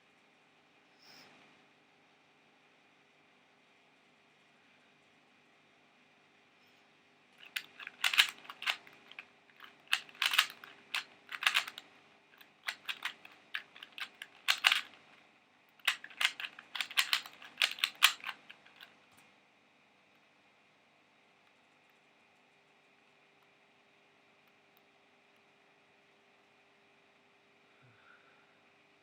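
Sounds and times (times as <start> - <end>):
puzzle cube plastic clicks: 7.4 - 19.0.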